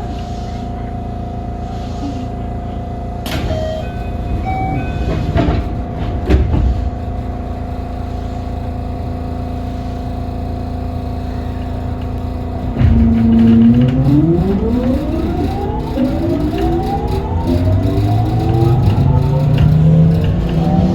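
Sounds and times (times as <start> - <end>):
electrical hum: 0.0 - 20.9
low rumble: 3.3 - 20.9
thumps: 3.3 - 20.9.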